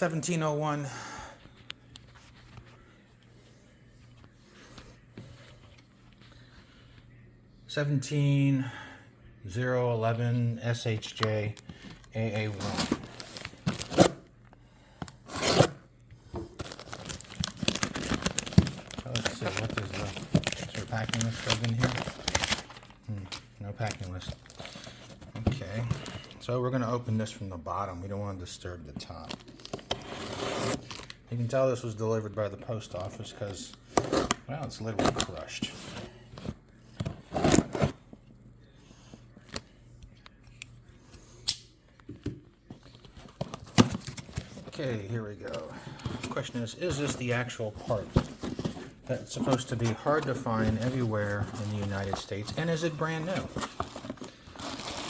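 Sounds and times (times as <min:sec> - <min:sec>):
packaging rubbing and scraping: 0:12.2 - 0:14.2, 0:15.2 - 0:15.8, 0:16.5 - 0:22.9, 0:29.6 - 0:31.1, 0:43.0 - 0:55.0
cardboard box being cut: 0:15.3 - 0:15.8.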